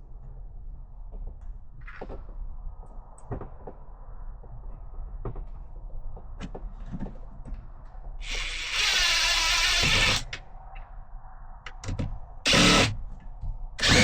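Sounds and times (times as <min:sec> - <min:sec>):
power drill running: 0:08.2 - 0:10.4, 0:12.5 - 0:13.0, 0:13.8 - 0:14.0.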